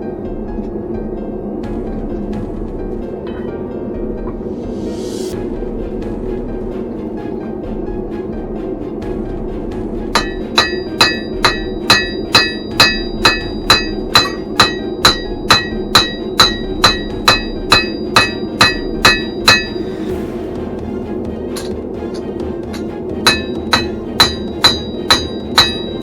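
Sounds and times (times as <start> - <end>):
hammer striking steel on anvil: 10.2 - 20.0, 21.5 - 26.0.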